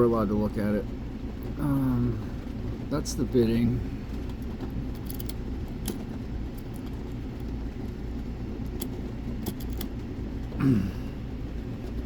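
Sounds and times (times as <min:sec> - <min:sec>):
steady low hum: 0:00.0 - 0:12.0
key and lock clicks: 0:04.9 - 0:07.2, 0:08.6 - 0:10.0.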